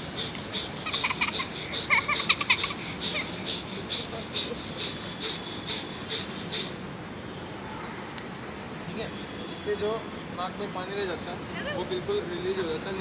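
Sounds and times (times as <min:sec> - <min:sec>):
forceful nasal exhalations: 0:00.0 - 0:06.9.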